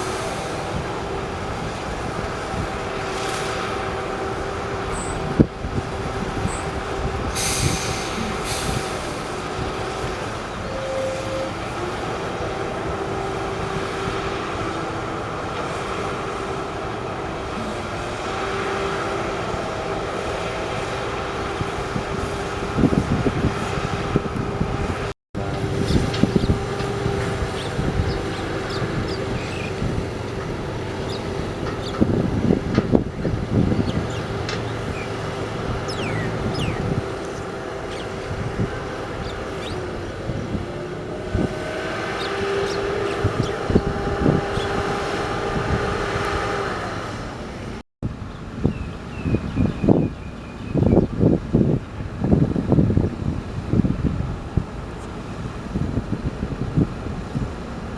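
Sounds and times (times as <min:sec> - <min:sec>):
held whine: 0:00.0 - 0:47.2
heavy machinery engine drone: 0:00.0 - 0:57.9.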